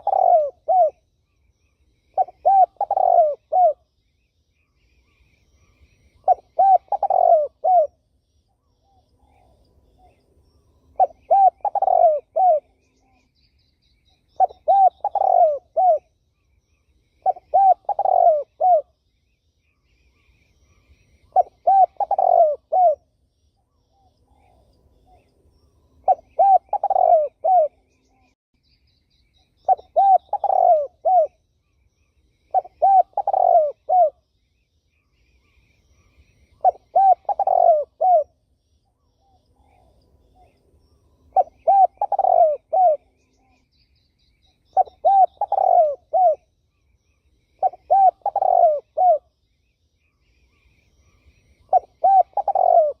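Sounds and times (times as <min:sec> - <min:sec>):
dove cooing: 0:00.0 - 0:01.0, 0:02.1 - 0:03.9, 0:06.2 - 0:08.0, 0:11.0 - 0:13.2, 0:14.4 - 0:16.1, 0:17.2 - 0:18.9, 0:21.2 - 0:23.0, 0:26.0 - 0:28.3, 0:29.6 - 0:31.4, 0:32.5 - 0:34.2, 0:36.6 - 0:38.4, 0:41.3 - 0:43.5, 0:44.7 - 0:46.5, 0:47.6 - 0:49.3, 0:51.1 - 0:53.0
faint bird chirps: 0:00.0 - 0:53.0.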